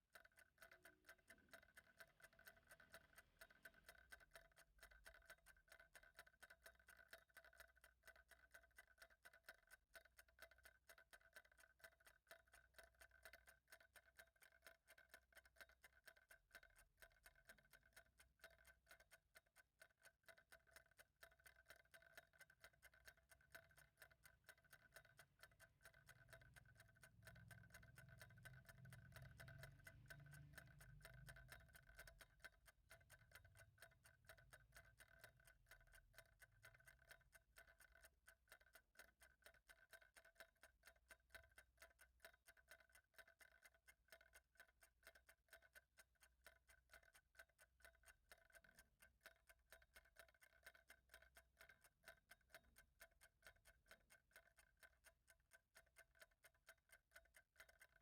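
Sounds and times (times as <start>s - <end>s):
clock ticking: 0.0s - 58.0s.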